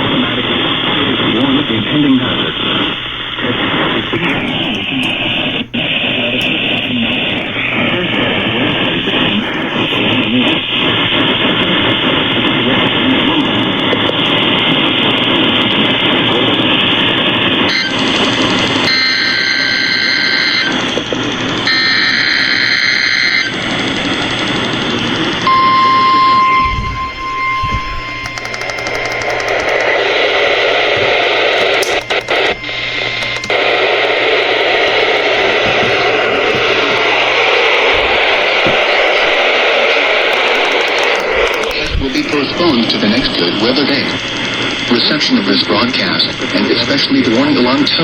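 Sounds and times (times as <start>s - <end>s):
radio static hissing: 0.0s - 48.0s
steady warning alarm tone: 0.0s - 48.0s
screeching digital data bursts: 17.7s - 48.0s.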